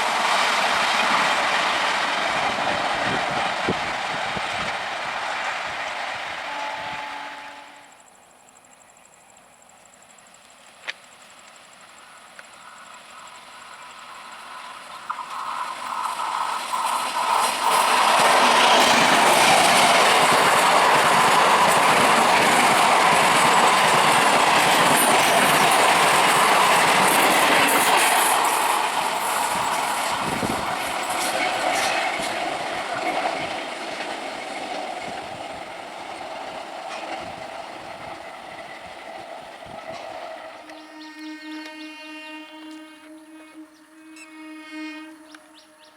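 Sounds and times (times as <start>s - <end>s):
train wheels clicking over rail joints: 10.4s - 40.8s.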